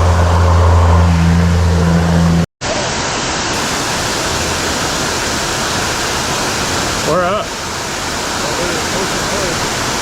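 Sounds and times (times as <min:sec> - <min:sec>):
low hum: 0:00.0 - 0:02.5
water rushing over spillway: 0:02.6 - 0:10.0.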